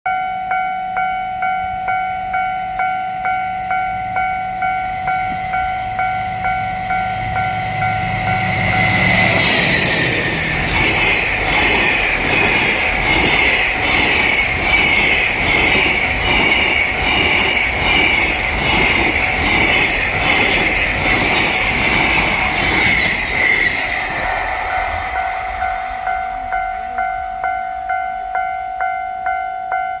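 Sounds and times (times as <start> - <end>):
level-crossing warning bell: 0.1 - 30.0
freight train rushing past: 1.7 - 29.4
wheels clacking over rail joints: 8.8 - 25.8.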